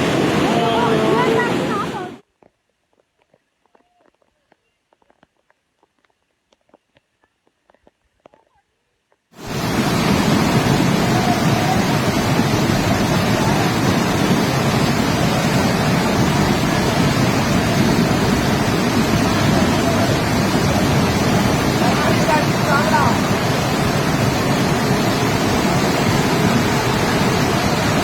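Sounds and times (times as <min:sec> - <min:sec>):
rushing floodwater roar: 0:00.0 - 0:02.2, 0:09.4 - 0:28.0.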